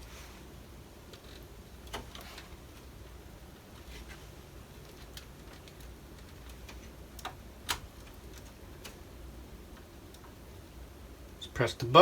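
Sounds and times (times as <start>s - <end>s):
small clicks and taps: 4.8s - 9.1s.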